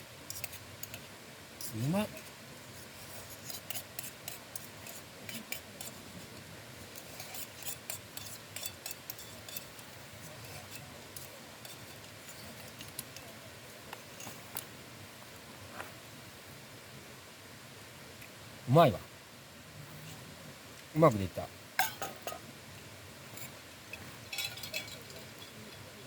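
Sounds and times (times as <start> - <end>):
utensils clinking on tableware: 21.8 - 22.4, 23.4 - 25.9.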